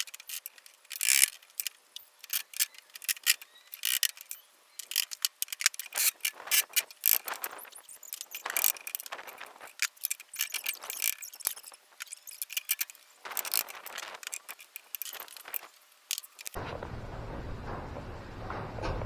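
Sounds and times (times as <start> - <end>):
steady low hum: 16.6 - 19.0.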